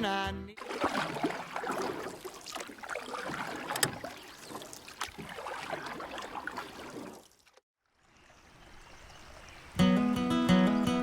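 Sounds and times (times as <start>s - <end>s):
paddle splashing water: 0.6s - 7.6s.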